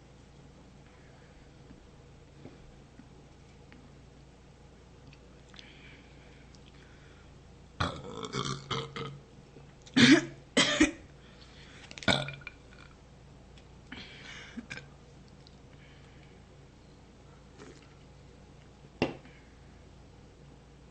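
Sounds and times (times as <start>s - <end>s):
woman burping: 7.8s - 9.2s, 12.1s - 12.9s.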